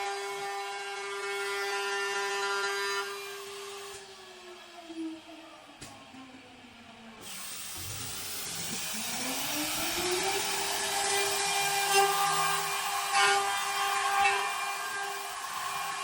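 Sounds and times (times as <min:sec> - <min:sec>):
spindle motor whine: 0:06.9 - 0:16.0.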